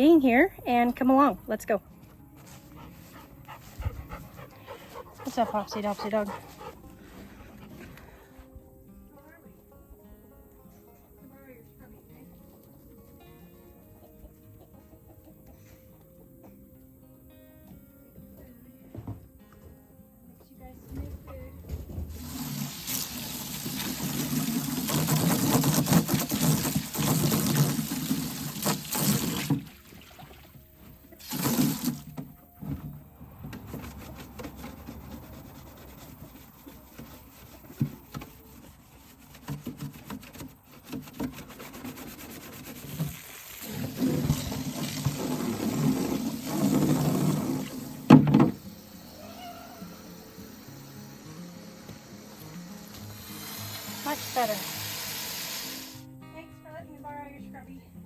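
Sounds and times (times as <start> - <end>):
tap water running into sink: 21.9 - 32.0, 42.9 - 48.6.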